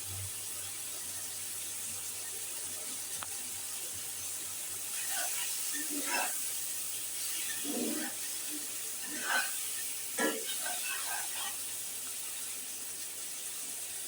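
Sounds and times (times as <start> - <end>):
potatoes sizzling in hot oil: 0.0 - 14.0
stirring scrapes: 5.0 - 6.4, 7.2 - 11.6.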